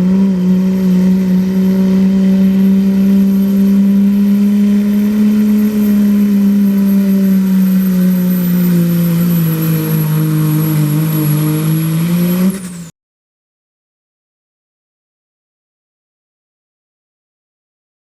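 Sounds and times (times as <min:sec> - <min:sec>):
diesel engine running at high revs: 0:00.0 - 0:12.9.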